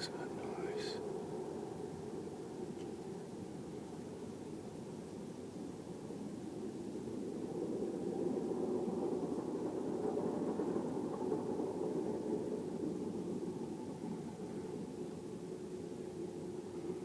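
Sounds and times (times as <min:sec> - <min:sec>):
low grinding droning rumble: 0:00.0 - 0:01.8.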